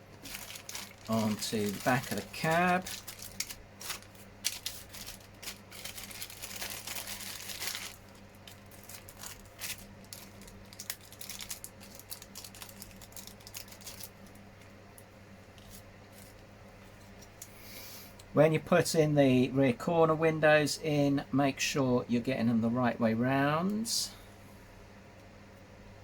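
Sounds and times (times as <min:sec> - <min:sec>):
plastic parts rustling and clicking: 0:00.2 - 0:14.1.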